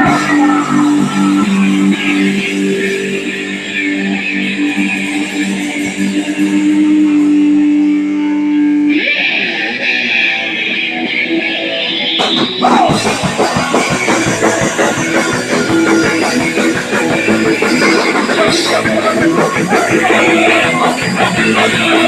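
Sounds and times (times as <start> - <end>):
electric guitar chords: 0.0 - 22.0
punk rock band playing: 0.0 - 22.0
drum kit crashing: 12.2 - 22.0.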